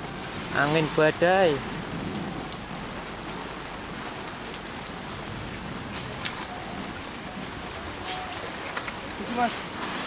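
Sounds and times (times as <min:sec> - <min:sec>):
heavy rain pattering: 0:00.0 - 0:10.0.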